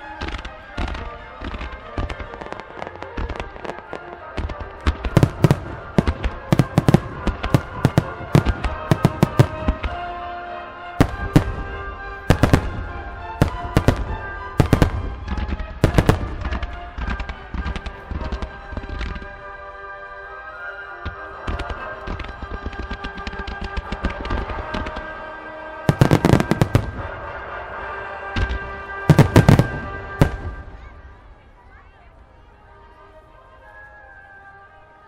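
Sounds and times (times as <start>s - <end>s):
fireworks bursting: 0.0s - 10.2s, 11.0s - 19.4s, 21.0s - 31.2s
music playing: 0.0s - 35.0s.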